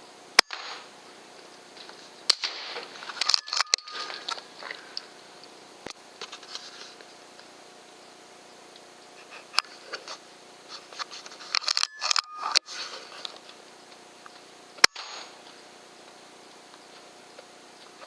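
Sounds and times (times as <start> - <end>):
air rifle mechanical clicks: 2.3 - 6.0, 11.4 - 13.6, 14.2 - 15.4.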